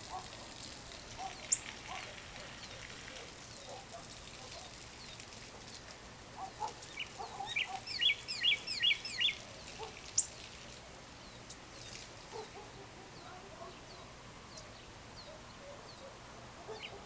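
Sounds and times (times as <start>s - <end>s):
bird high chirps: 6.6s - 9.4s, 16.7s - 17.0s.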